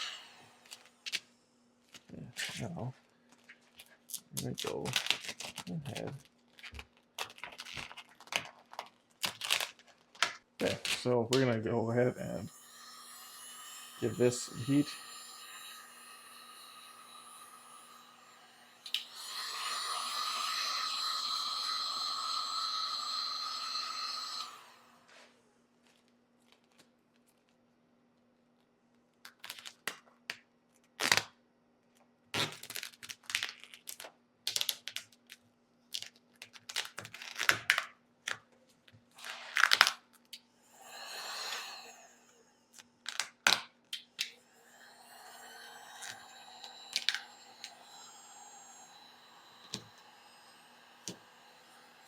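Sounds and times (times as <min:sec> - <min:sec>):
heat gun whine: 0:00.0 - 0:00.9, 0:12.0 - 0:25.0, 0:40.7 - 0:42.4, 0:44.3 - 0:52.0
vinyl film crackling and tearing: 0:03.7 - 0:11.6, 0:29.2 - 0:31.4, 0:32.3 - 0:38.4, 0:39.2 - 0:40.2, 0:43.0 - 0:44.3
steady hum: 0:44.3 - 0:52.0.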